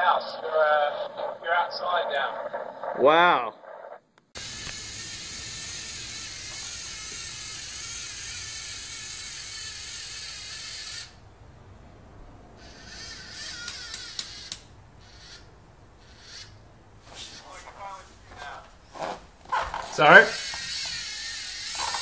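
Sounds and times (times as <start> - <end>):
robot motor gear whir: 4.4 - 11.1, 19.0 - 22.0
small clicks: 13.4 - 14.7.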